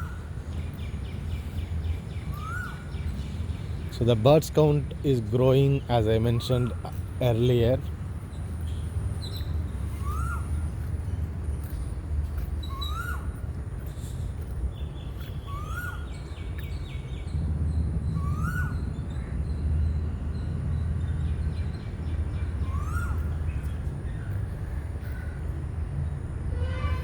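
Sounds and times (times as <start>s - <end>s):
birds chirping faintly: 0.0s - 27.0s
bird repeating rising falling call: 22.6s - 23.7s.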